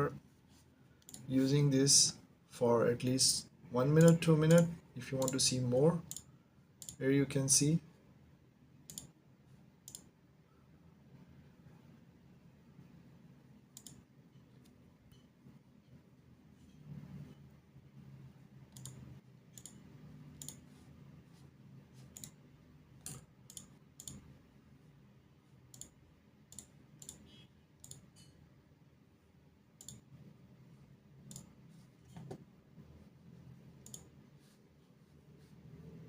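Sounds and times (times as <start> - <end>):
computer mouse clicks: 1.0 - 1.3, 3.9 - 7.0, 8.9 - 9.2, 9.8 - 10.1, 13.7 - 15.3, 18.7 - 20.8, 22.0 - 22.4, 23.0 - 24.3, 25.7 - 28.4, 29.8 - 30.1, 31.3 - 32.4, 33.8 - 34.2.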